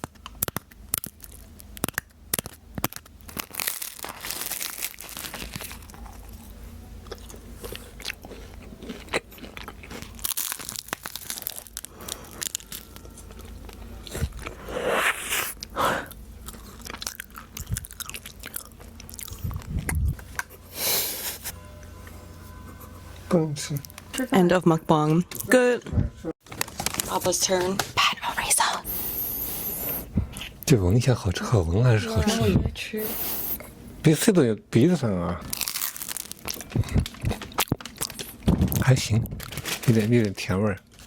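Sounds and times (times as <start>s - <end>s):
crisp pastry crunching and chewing: 0.0s - 20.6s, 35.4s - 41.0s.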